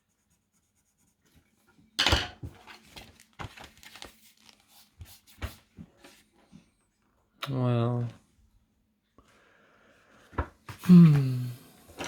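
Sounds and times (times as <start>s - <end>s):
hard objects clattering on table: 2.0s - 2.7s.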